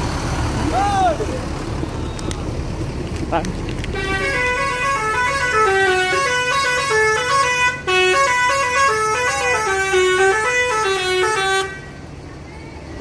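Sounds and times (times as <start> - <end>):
bus horn playing a tune: 3.9 - 12.1.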